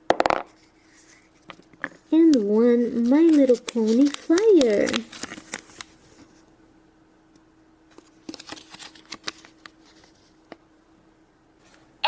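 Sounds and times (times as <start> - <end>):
faint steady hum: 0.0 - 12.0
paper rustling: 0.8 - 6.4, 7.9 - 10.4.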